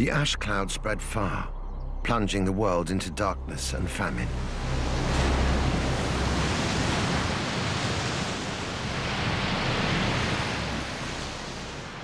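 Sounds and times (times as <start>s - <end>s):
low rumble: 0.0s - 8.7s.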